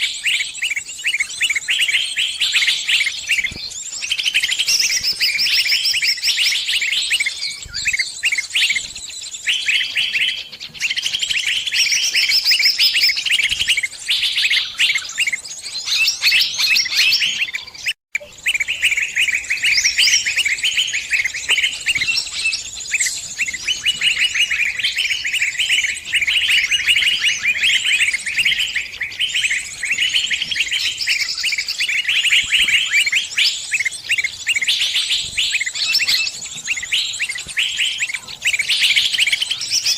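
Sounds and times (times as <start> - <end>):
small birds chirping and twittering: 0.0 - 39.9.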